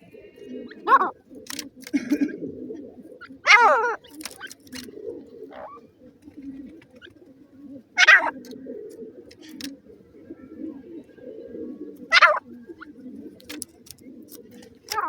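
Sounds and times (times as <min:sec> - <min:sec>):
chick chirping: 0:12.2 - 0:12.4.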